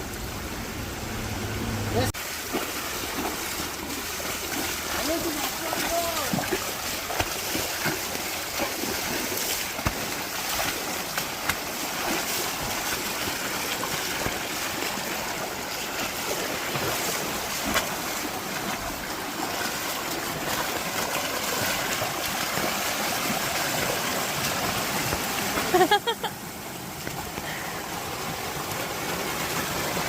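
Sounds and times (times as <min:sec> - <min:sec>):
floodwater rushing: 0:00.0 - 0:30.0.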